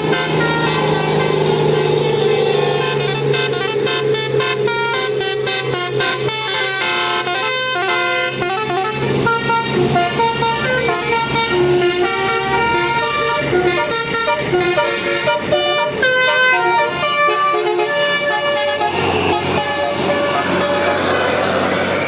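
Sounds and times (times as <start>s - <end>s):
bus multi-tone air horn melody: 0.0s - 22.0s.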